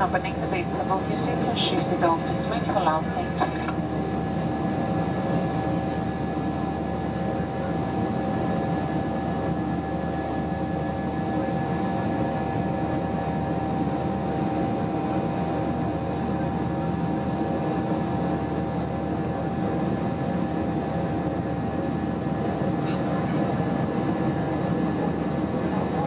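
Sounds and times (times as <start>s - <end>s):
steady whine: 0.0s - 11.9s
airplane engine rumble: 0.0s - 26.0s.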